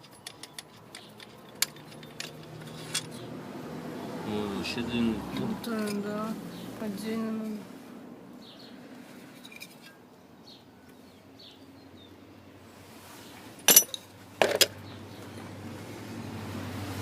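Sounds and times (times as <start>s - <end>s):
small metal parts clicking: 0.0s - 3.2s, 13.7s - 14.7s
sharp metal clinks: 13.7s - 14.0s.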